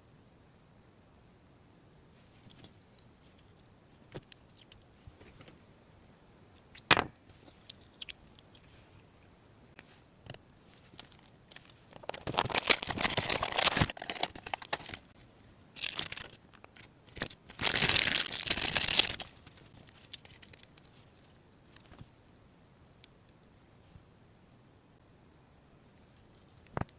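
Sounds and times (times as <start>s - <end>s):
wrapping material crinkling: 10.6s - 22.0s.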